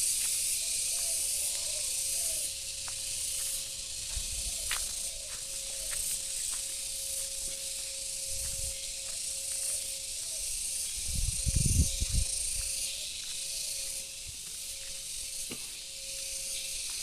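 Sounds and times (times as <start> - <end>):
high-pitched outdoor hiss: 0.0 - 17.0.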